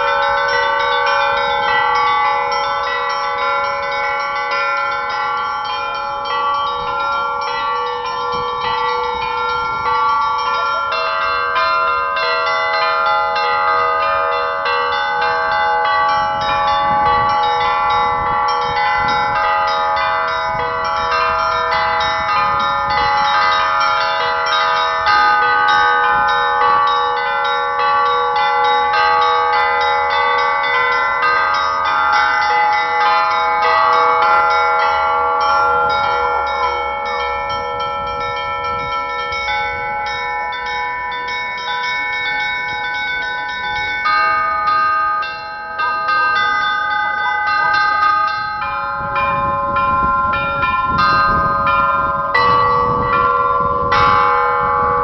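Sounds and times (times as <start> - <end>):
church bells pealing: 0.0 - 55.0.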